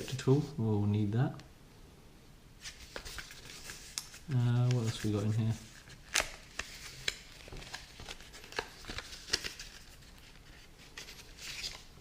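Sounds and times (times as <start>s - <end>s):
cardboard and paper rustling: 2.6s - 12.0s.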